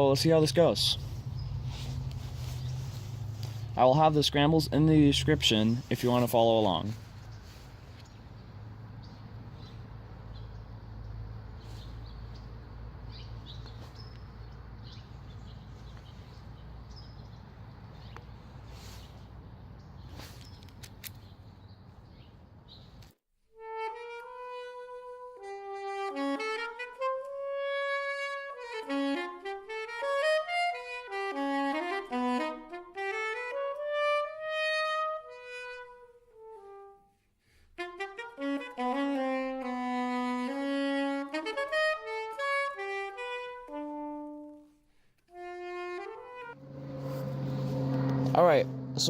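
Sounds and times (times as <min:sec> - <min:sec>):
solo saxophone melody: 0:23.5 - 0:49.0.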